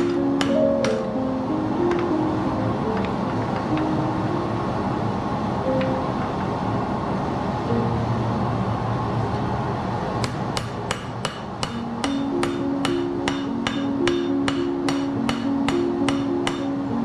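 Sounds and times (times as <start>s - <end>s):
hammer ringing on anvil: 10.6s - 16.7s.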